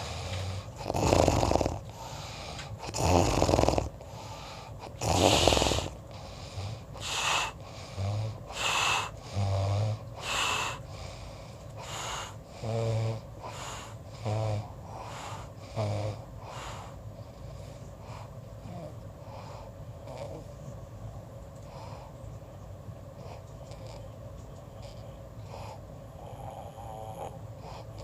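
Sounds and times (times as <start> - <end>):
hissing breaths: 0.0 - 12.8, 13.4 - 18.4
buzzing snores: 0.0 - 20.5, 23.2 - 24.1, 24.8 - 28.0.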